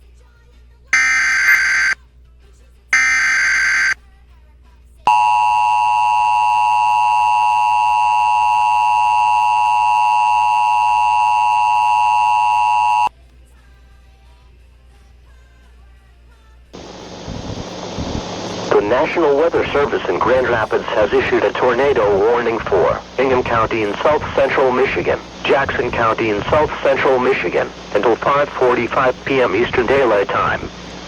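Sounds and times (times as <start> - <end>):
buzzing digital data bursts: 1.0 - 2.0, 3.0 - 4.0
two-tone alert signal: 1.0 - 2.0, 3.0 - 4.0, 5.1 - 13.1.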